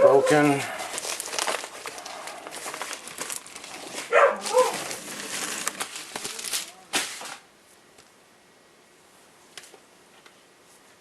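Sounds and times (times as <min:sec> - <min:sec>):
packaging crinkling and rustling: 0:00.0 - 0:07.4.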